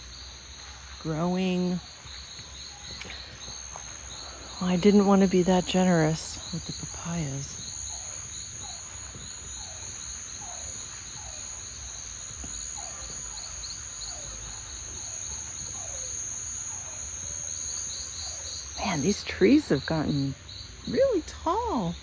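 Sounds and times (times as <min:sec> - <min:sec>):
insects trilling: 0:00.0 - 0:22.0.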